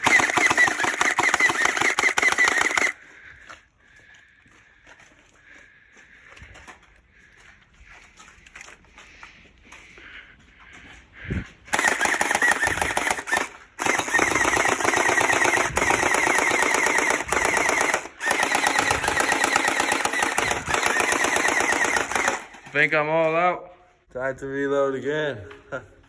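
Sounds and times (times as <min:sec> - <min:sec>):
gel blaster rattling shots: 0:00.0 - 0:03.0, 0:11.7 - 0:22.9.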